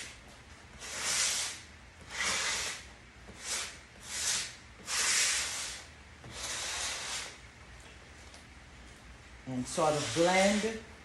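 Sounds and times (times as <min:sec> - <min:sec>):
sanding block hissing on wood: 0:00.8 - 0:07.4, 0:09.7 - 0:10.9.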